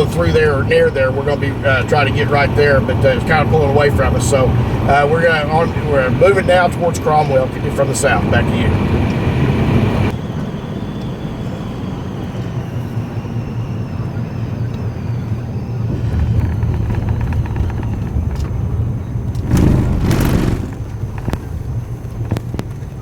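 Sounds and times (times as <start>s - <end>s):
tyre road noise: 0.0s - 10.2s, 14.8s - 23.0s
vehicle engine hum: 0.0s - 23.0s.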